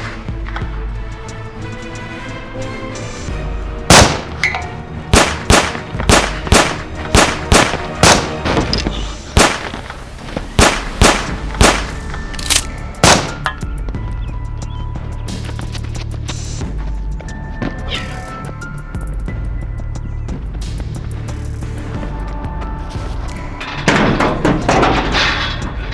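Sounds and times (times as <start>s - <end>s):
background music: 0.0s - 25.9s
sharp gunshot-like shots: 3.9s - 4.4s, 5.1s - 8.7s, 9.3s - 10.0s, 10.6s - 12.1s, 13.0s - 13.5s.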